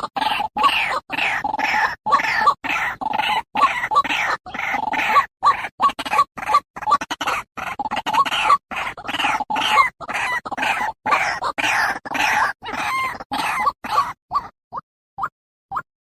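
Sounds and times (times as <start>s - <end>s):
waterhen calling: 0.0s - 14.5s.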